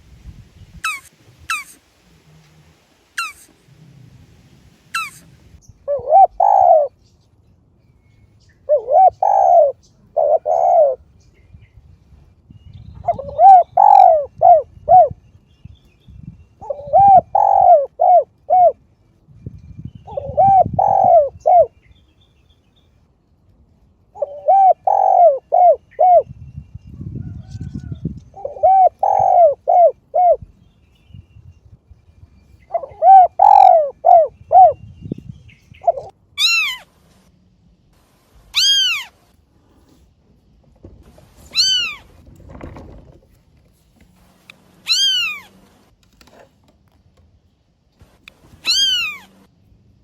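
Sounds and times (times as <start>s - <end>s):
bird calling: 0.8s - 1.8s, 3.2s - 3.6s, 4.9s - 7.0s, 8.6s - 11.0s, 13.0s - 15.2s, 16.6s - 18.8s, 20.0s - 21.8s, 24.1s - 26.3s, 28.3s - 30.4s, 32.6s - 34.8s, 35.6s - 37.0s, 38.5s - 39.3s, 41.4s - 42.9s, 44.6s - 45.8s, 48.3s - 49.5s
cat meowing: 38.5s - 39.1s, 44.9s - 45.5s, 48.6s - 49.3s.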